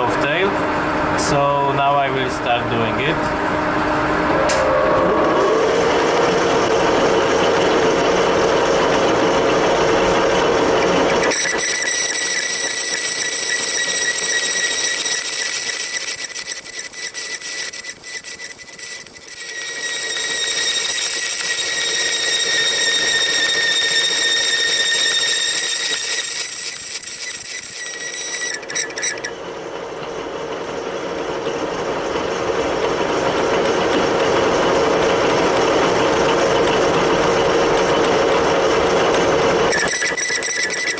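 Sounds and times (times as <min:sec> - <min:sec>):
metal lathe humming: 0:00.6 - 0:40.9
high-pitched tool chatter squeal: 0:10.8 - 0:29.4, 0:39.7 - 0:40.9.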